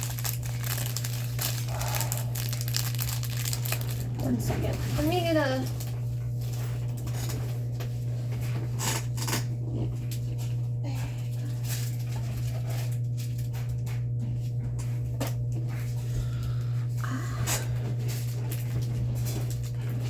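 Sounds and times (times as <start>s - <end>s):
small hard items clicking: 0.0s - 4.0s
packaging rustling: 0.0s - 6.0s
steady low hum: 0.0s - 20.0s.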